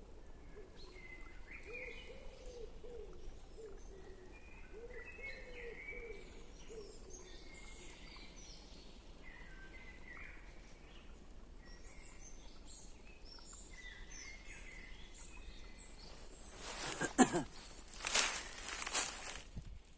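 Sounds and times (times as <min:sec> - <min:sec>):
songbirds chirping and singing: 0:00.0 - 0:19.6
loud rustle: 0:16.1 - 0:19.8.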